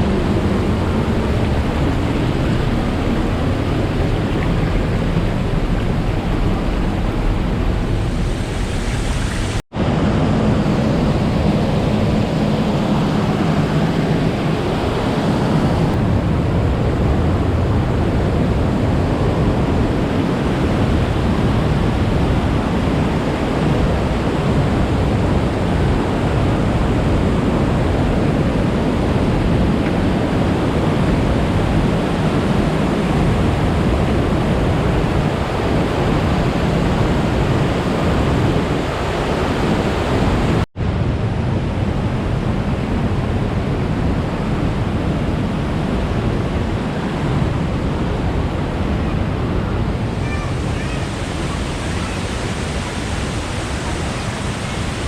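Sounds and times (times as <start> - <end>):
waterfall rushing: 0.0 - 9.6, 49.7 - 55.0.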